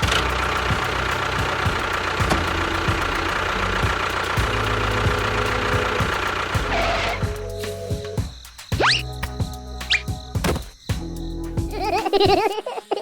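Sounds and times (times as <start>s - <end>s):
small engine knocking rattle: 0.0s - 7.5s.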